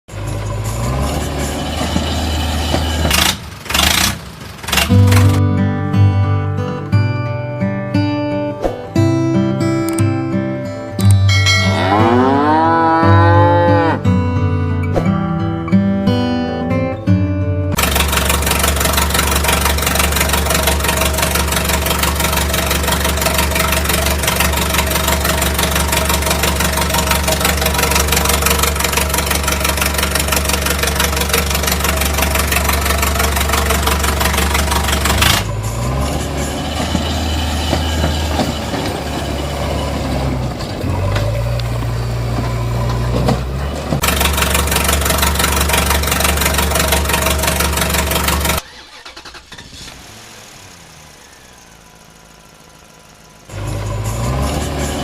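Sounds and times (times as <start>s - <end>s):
engine running with low hum: 0.1s - 5.8s, 17.7s - 55.0s.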